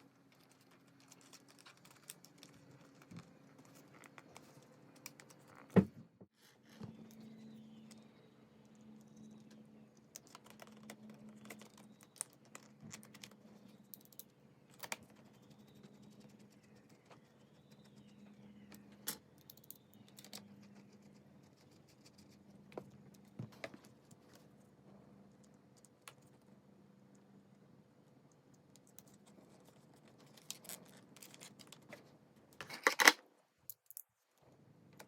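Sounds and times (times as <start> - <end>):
small parts clicking and tapping: 8.6 - 16.8, 17.5 - 20.9, 28.0 - 34.1.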